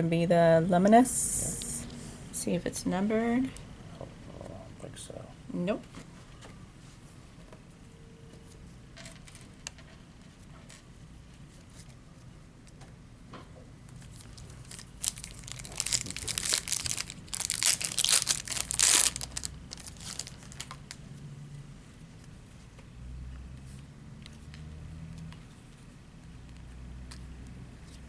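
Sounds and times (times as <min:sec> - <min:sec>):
faint wrapper rustles: 0:14.0 - 0:21.0
wrapper tearing and crinkling: 0:14.0 - 0:21.0.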